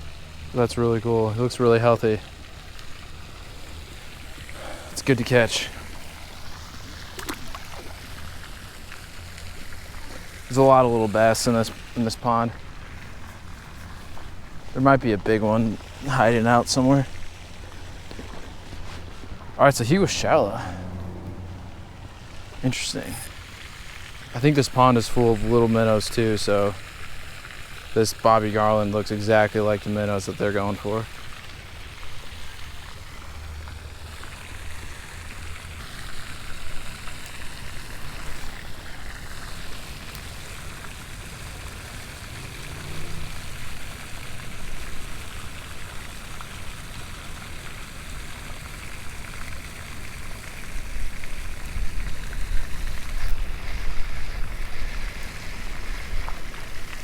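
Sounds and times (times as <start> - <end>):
wind blowing across microphone: 50.8 - 57.0.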